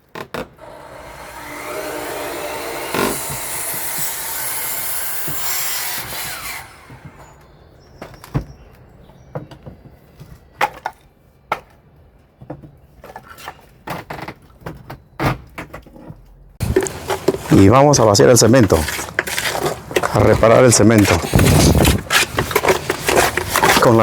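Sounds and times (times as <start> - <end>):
wood and tools knocking: 0.1 - 7.4, 12.4 - 24.0
saw cutting through wood: 0.6 - 7.6, 16.6 - 24.0.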